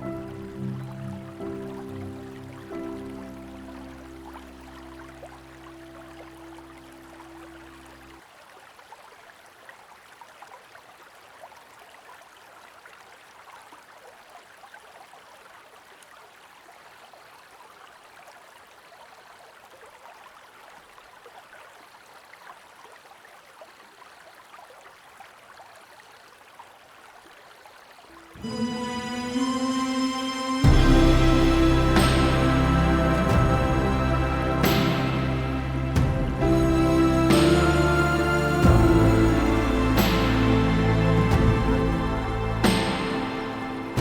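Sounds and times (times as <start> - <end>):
background music: 0.0 - 8.0, 28.2 - 44.0
creek water flowing: 0.0 - 44.0
faint high note: 28.2 - 44.0.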